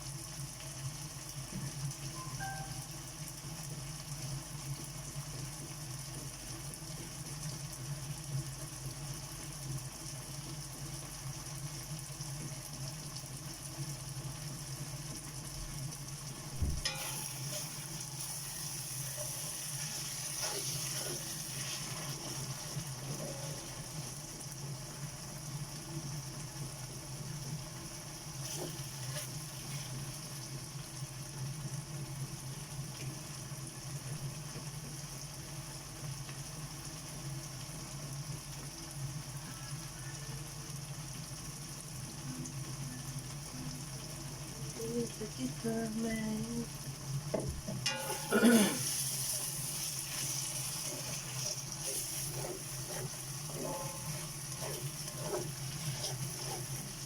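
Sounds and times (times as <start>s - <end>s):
tomatoes sizzling in a pan: 0.0s - 57.0s
faint scrapes: 50.0s - 57.0s.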